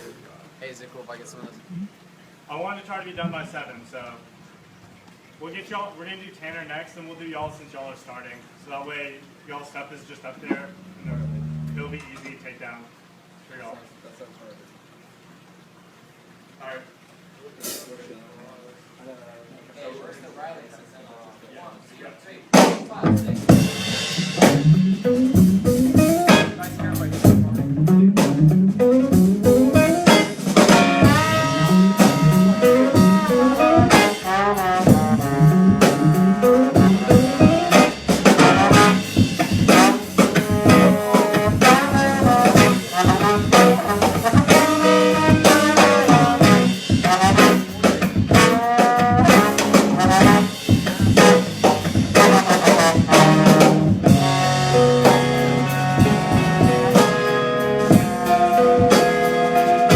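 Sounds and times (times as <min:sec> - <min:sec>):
drum kit: 0:17.6 - 0:18.0, 0:22.5 - 0:59.9
lead melody with sliding notes: 0:23.6 - 0:59.9.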